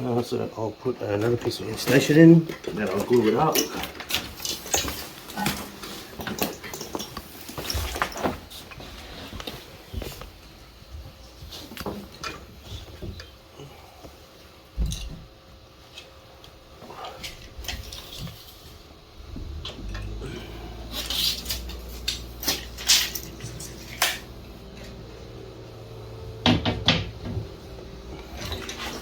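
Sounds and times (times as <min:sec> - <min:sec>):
low steady hum: 0:00.0 - 0:29.0
tools knocking and rustling: 0:01.2 - 0:13.4, 0:14.7 - 0:16.6, 0:20.9 - 0:25.5, 0:26.1 - 0:29.0.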